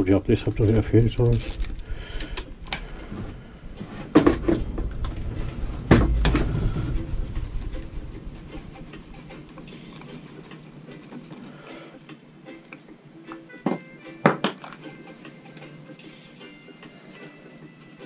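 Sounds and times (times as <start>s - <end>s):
rumbling handling noise: 0.0s - 11.5s
rustling and small clicks: 0.5s - 3.3s.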